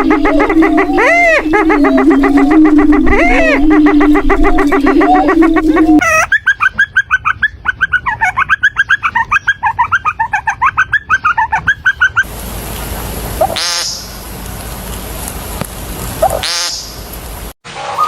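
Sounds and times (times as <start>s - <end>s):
low animal note: 0.0s - 6.1s
long falling animal call: 0.0s - 7.0s
fast sharp chirping calls: 0.0s - 12.3s
steady hiss: 12.3s - 17.6s.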